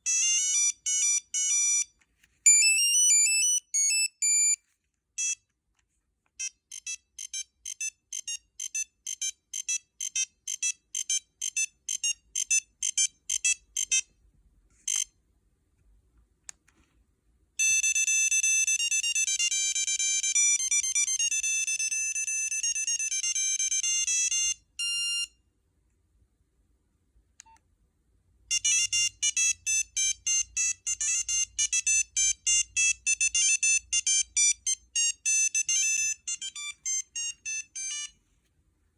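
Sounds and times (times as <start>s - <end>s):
phone ringtone beeping melody: 0.0s - 1.9s, 2.5s - 4.6s, 6.4s - 14.1s, 17.6s - 25.4s, 28.5s - 38.2s.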